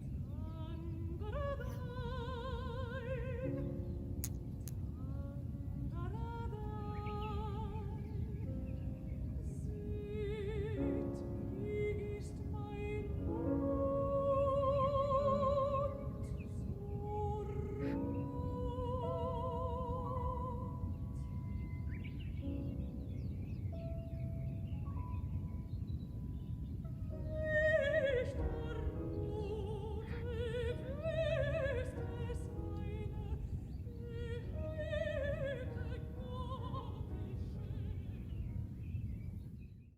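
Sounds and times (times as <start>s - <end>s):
person singing operatically: 0.0s - 3.9s, 9.4s - 21.0s, 27.3s - 38.3s.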